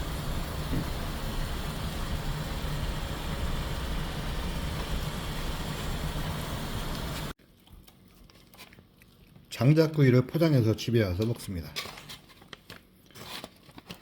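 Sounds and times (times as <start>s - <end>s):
car engine and road noise: 0.0s - 7.3s.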